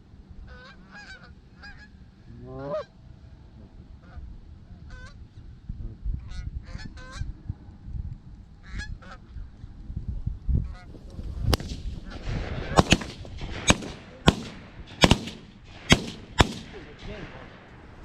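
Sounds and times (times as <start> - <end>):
shotgun shots: 11.5 - 17.8.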